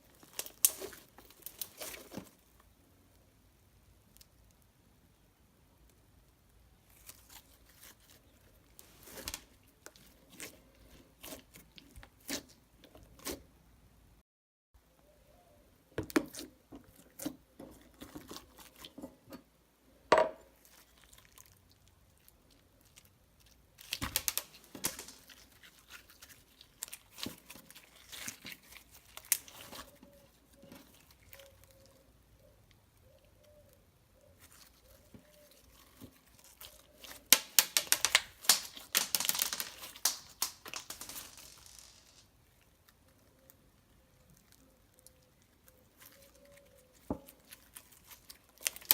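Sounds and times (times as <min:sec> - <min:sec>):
slime squished by hand: 0:00.0 - 0:02.5, 0:06.8 - 0:13.4, 0:20.6 - 0:32.0, 0:34.4 - 0:42.7, 0:44.4 - 0:48.9.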